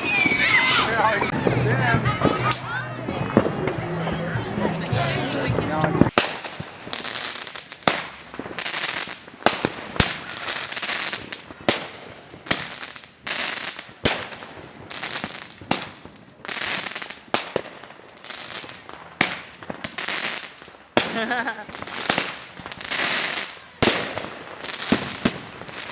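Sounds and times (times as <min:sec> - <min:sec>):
fireworks bangs with crackling hiss: 0:00.0 - 0:25.9.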